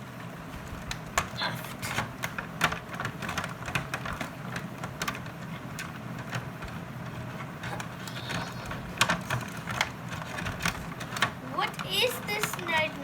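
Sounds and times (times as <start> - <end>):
steady low hum: 0.0 - 13.0
toy packaging rustling and clicking: 7.5 - 13.0.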